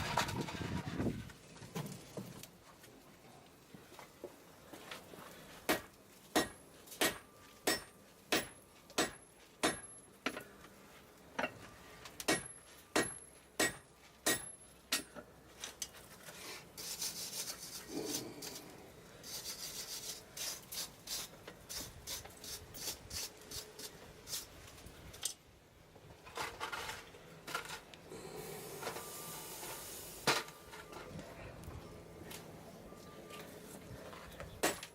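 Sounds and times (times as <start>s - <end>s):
hammer striking steel on anvil: 5.7s - 10.4s, 12.2s - 15.2s
metal rasping and scraping: 16.1s - 24.5s.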